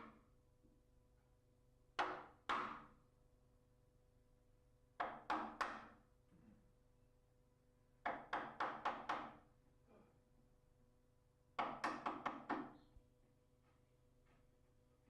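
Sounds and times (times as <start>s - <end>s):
chisel knocking into wood: 2.0s - 3.0s, 8.0s - 9.4s.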